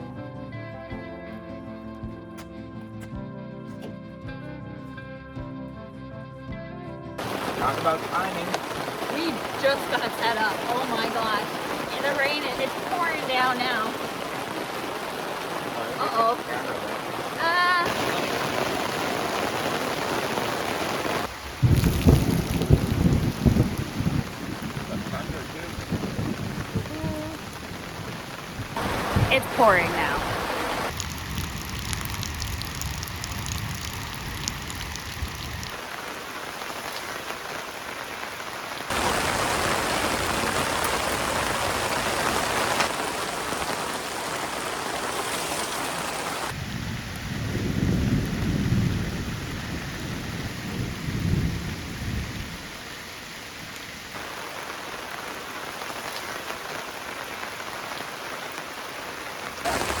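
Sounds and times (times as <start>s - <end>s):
low thunder rumbling: 7.2s - 35.8s, 38.9s - 45.0s, 46.5s - 52.9s, 59.7s - 60.0s
heavy rain pouring: 7.2s - 60.0s.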